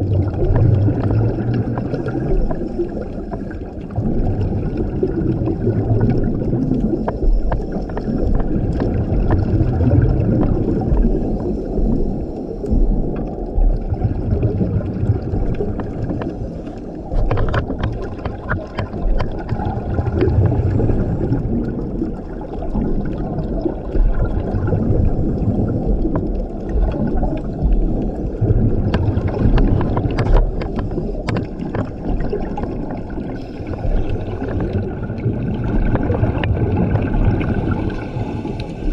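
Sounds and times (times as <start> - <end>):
exhaled bubbles burbling underwater: 0.0 - 38.9
regulator inhale hiss: 37.6 - 38.9.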